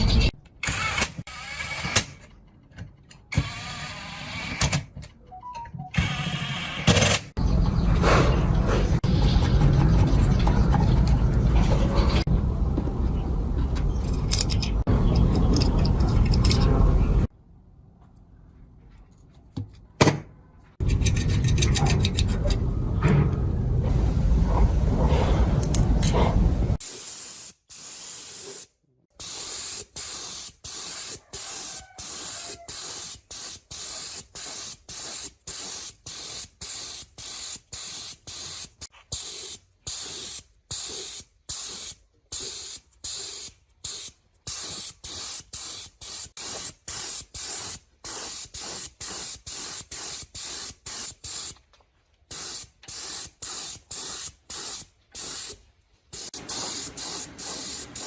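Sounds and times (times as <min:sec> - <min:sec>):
spray nozzle hissing bursts: 0:08.0 - 0:09.0, 0:25.0 - 0:51.6, 0:52.3 - 0:55.6, 0:56.2 - 0:58.0.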